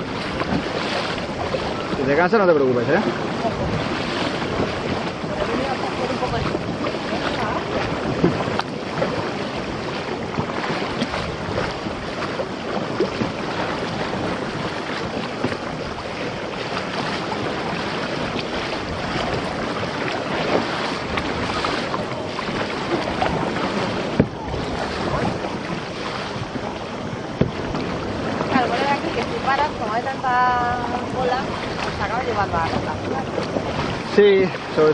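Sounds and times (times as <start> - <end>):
paddle splashes: 0.0 - 34.9
water lapping around kayak: 0.0 - 34.9
wind noise on microphone: 0.0 - 34.9.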